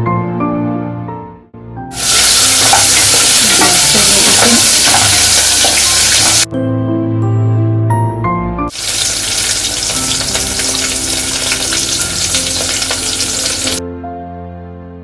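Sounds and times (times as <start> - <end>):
background music: 0.0 - 15.0
hot oil sizzling in a pan: 2.0 - 6.5, 8.7 - 13.8.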